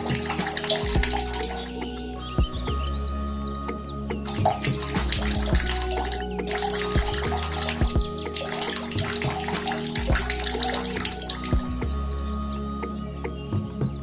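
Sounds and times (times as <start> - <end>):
water running and splashing: 0.0 - 2.7, 4.3 - 11.8
background music: 0.0 - 14.0.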